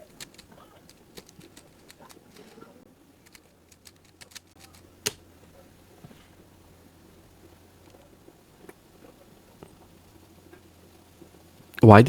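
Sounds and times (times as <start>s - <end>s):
rubik's cube plastic clicks: 0.0s - 2.6s, 3.2s - 5.2s.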